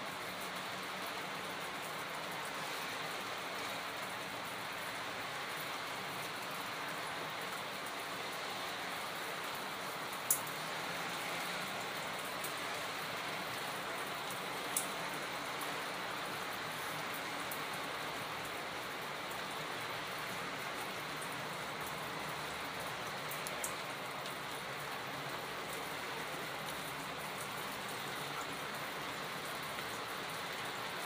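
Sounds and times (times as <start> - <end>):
rainfall hiss: 0.0 - 31.0
raindrops ticking: 9.5 - 10.6, 13.6 - 17.8, 20.4 - 31.0.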